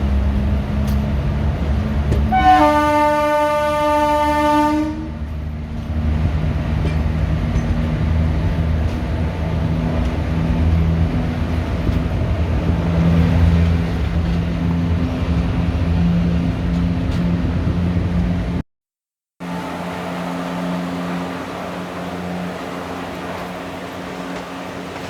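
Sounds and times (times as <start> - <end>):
train coaches rumbling on track: 0.0 - 18.6, 19.4 - 25.0
locomotive horn: 2.3 - 5.2.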